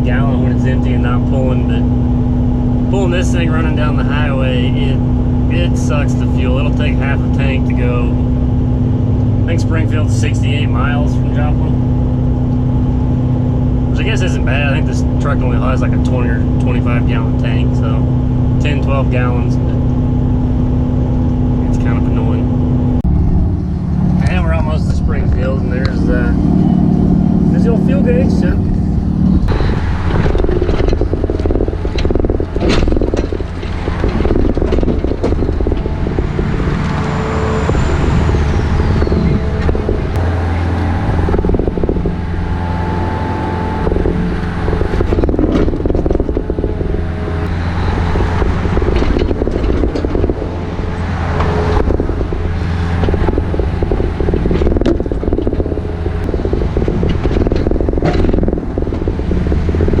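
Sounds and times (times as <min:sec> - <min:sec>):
truck engine and road noise: 0:00.0 - 1:00.0
clicks and rattles: 0:29.4 - 0:37.1, 0:47.4 - 0:50.4, 0:53.0 - 1:00.0.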